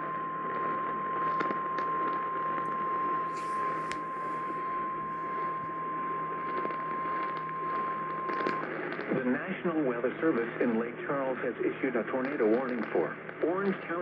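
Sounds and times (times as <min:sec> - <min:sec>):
radio static: 0:00.0 - 0:14.0
steady alert tone: 0:03.3 - 0:05.8.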